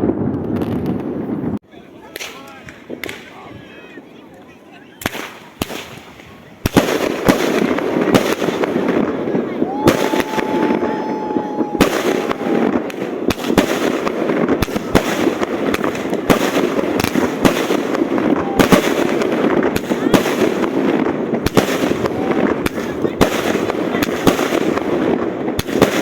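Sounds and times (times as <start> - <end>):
fireworks bangs: 0.0 - 26.0
fireworks crackling: 0.0 - 26.0
firework whistle: 9.4 - 13.7.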